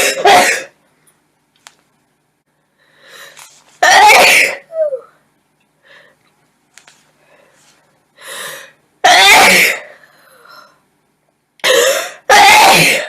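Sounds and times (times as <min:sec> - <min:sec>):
woman sneezing: 0:11.6 - 0:13.0.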